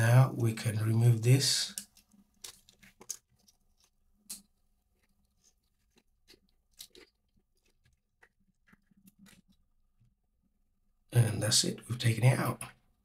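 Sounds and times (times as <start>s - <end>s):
plastic parts clicking and scraping: 1.7s - 4.5s.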